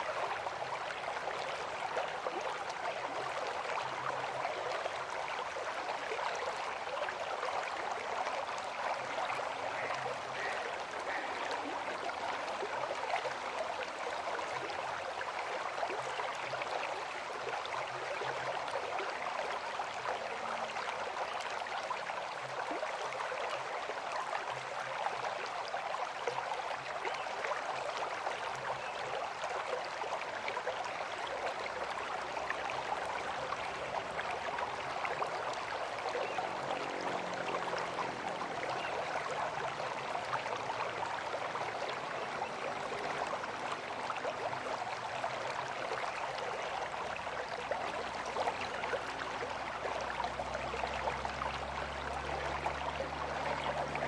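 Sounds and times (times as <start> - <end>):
river water rushing: 0.0 - 15.9, 29.3 - 54.0.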